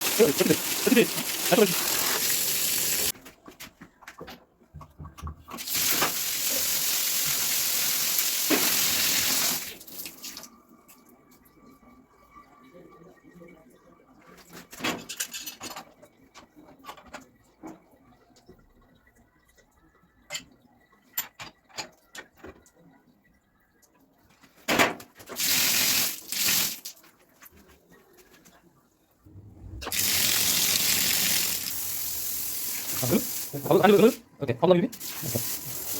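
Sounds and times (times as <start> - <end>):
water hissing from hose spray: 0.0 - 3.1, 29.8 - 33.7, 35.0 - 35.9.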